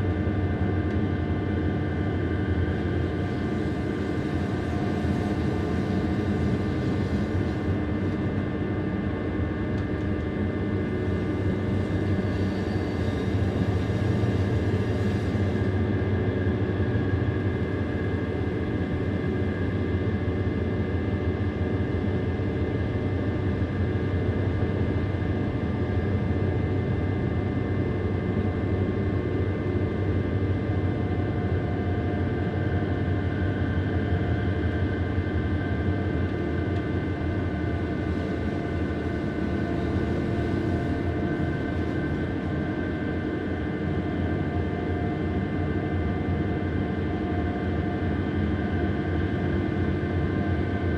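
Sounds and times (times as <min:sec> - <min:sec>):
train rumbling: 0:36.4 - 0:43.2.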